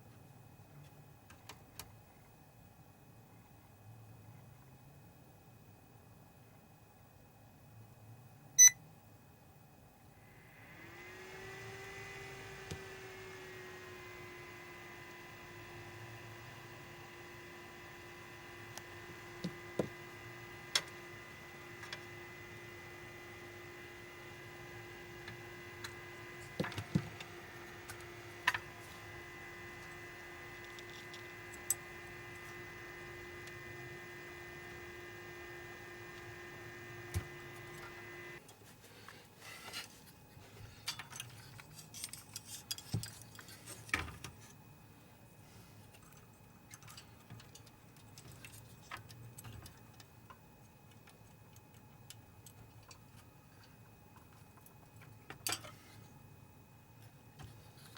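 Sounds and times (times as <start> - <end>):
projector hum with high whine: 0.0 - 57.9
parts clicking and rattling: 40.8 - 44.4.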